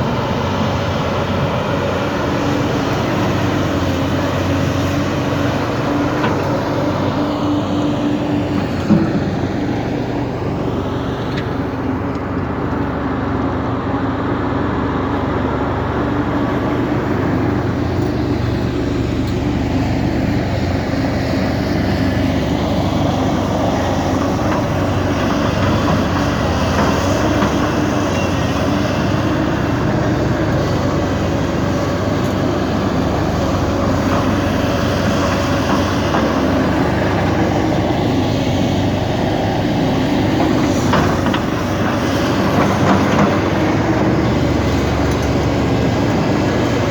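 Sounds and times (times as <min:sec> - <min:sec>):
excavator diesel engine running: 0:00.0 - 0:46.9.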